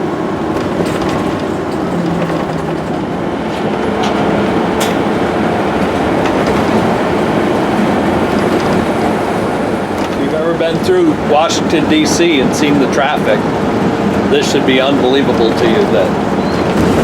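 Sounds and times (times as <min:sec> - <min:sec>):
road and engine noise inside vehicle: 0:00.0 - 0:17.0
faint rattles: 0:00.5 - 0:05.0.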